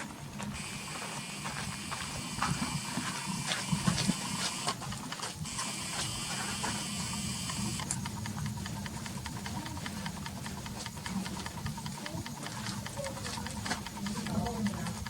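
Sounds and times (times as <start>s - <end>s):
footsteps crunching on gravel: 0.0s - 6.8s
steady high hiss: 0.1s - 15.0s
small clicks: 2.4s - 15.0s.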